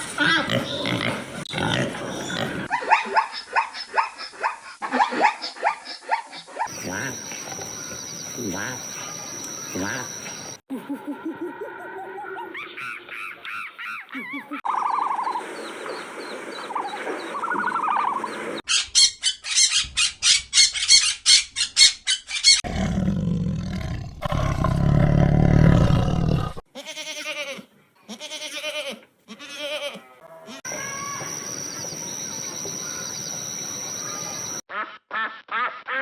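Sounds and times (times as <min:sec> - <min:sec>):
high chirping animal calls: 0:06.7 - 0:10.6, 0:30.7 - 0:34.6
loud low animal roar: 0:22.7 - 0:26.6.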